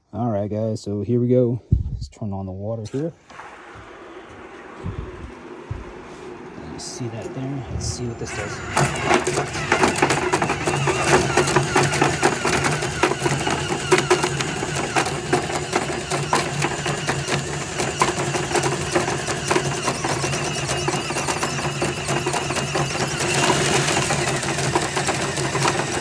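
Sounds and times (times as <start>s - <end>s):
power drill motor hum: 3.2s - 26.0s
cable rattling in tank: 6.3s - 26.0s.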